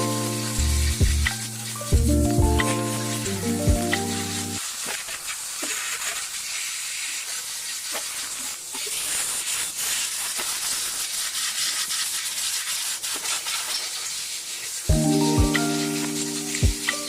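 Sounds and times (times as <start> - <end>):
background music: 0.0 - 4.6, 14.9 - 17.0
steady hiss: 0.0 - 17.0.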